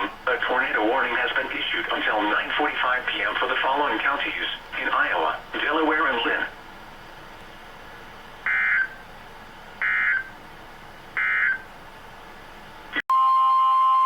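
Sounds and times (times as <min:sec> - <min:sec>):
faint radio hiss: 0:00.0 - 0:08.2.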